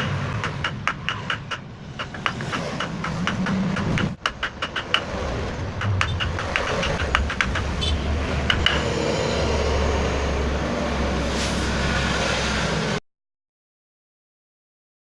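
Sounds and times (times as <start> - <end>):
knocks and clicks from handling tools: 0.3 - 8.9.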